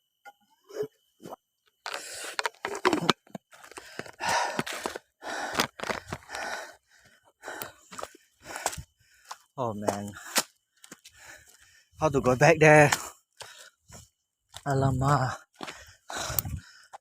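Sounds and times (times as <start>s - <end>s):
person gasping breaths: 3.7s - 9.4s, 15.6s - 17.0s.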